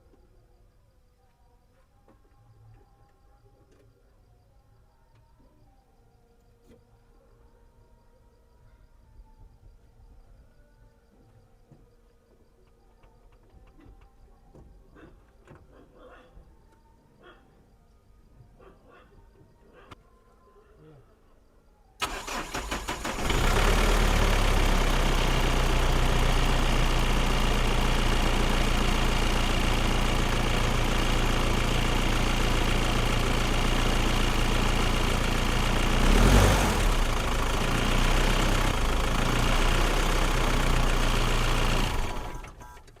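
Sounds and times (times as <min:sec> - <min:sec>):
car engine cranking and idling: 0:22.0 - 0:43.0.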